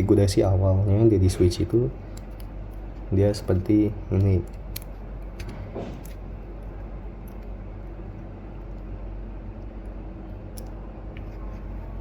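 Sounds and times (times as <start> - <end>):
low background hum: 0.0 - 12.0
plastic switch parts clicking: 4.1 - 6.2.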